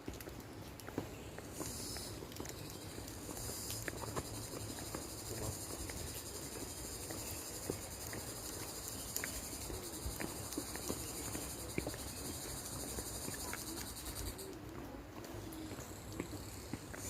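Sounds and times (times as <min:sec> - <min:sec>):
insects chirring: 0:01.4 - 0:14.6.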